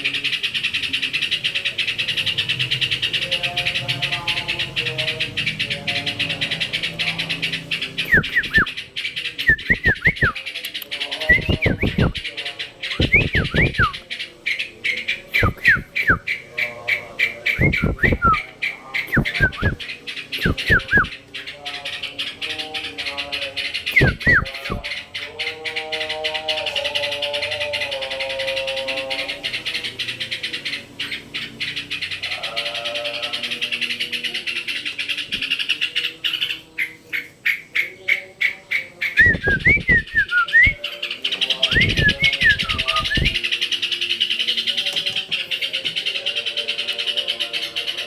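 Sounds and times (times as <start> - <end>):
bird clicking chatter: 4.6 - 16.4, 37.5 - 47.1
bird calling with whistled notes: 7.9 - 10.6, 11.2 - 12.3, 12.9 - 14.1, 15.3 - 16.4, 17.5 - 18.5, 19.1 - 21.2, 23.8 - 24.9, 39.1 - 40.9, 41.5 - 43.5
bird whistles sweeping downward: 17.6 - 18.4, 39.2 - 40.8.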